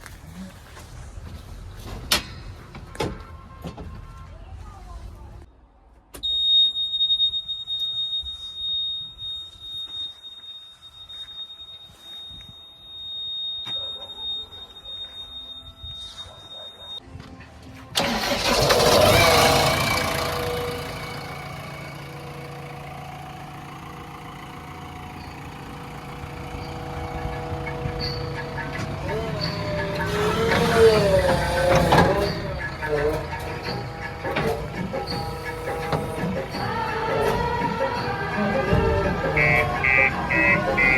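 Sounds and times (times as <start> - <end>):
high-pitched warning tone: 6.2 - 17.0, 24.5 - 40.9
diesel engine starting and idling: 17.8 - 40.9.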